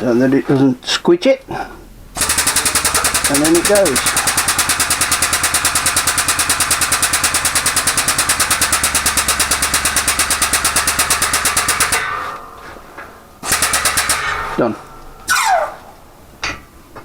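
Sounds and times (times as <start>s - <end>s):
hydraulic pump chattering: 2.2s - 12.4s, 13.4s - 15.8s.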